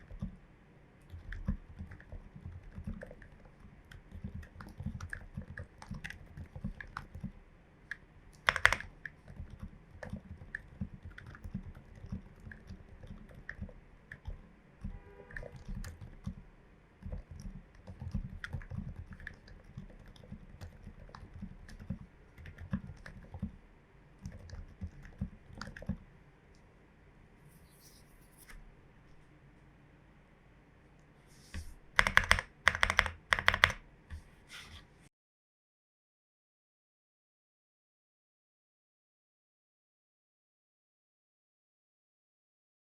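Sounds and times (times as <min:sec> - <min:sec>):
mechanical keyboard typing: 0:01.1 - 0:07.4, 0:08.3 - 0:16.4, 0:17.0 - 0:23.6, 0:24.2 - 0:26.0, 0:31.9 - 0:33.8.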